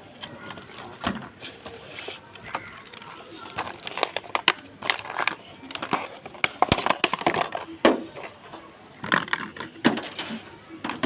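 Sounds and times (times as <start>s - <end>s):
packaging rustling: 2.5s - 7.8s.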